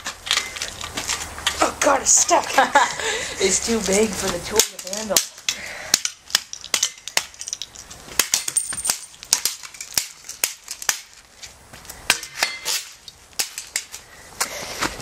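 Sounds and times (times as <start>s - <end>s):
tool cracking plastic: 9.2s - 11.2s.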